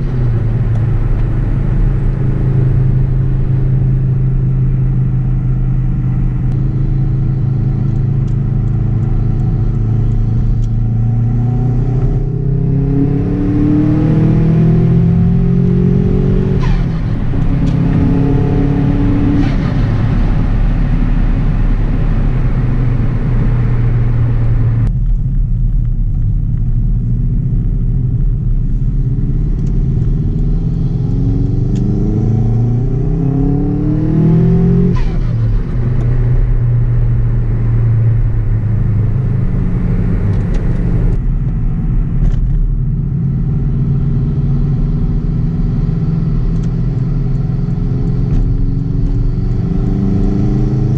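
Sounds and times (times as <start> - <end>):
car engine accelerating: 0.0 - 50.9.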